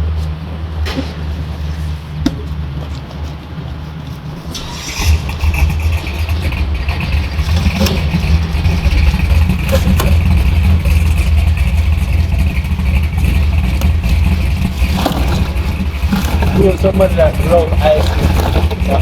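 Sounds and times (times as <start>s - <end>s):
car road and engine rumble: 0.0s - 19.0s.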